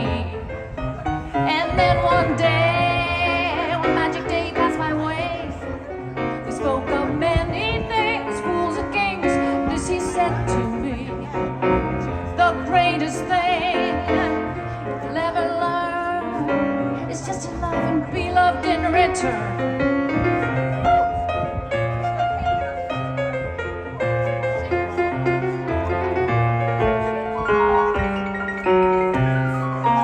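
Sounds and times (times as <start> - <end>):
woman singing with vibrato: 0.0 - 0.5, 1.4 - 5.7, 6.4 - 11.4, 12.3 - 19.8
jazz piano: 0.0 - 30.0.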